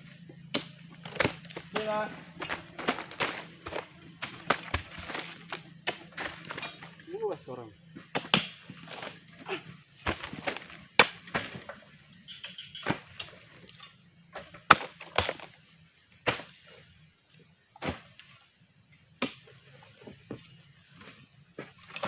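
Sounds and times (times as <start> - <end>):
sharp knocks and thuds: 0.5 - 7.0, 7.9 - 11.8, 14.3 - 15.6, 16.2 - 16.6.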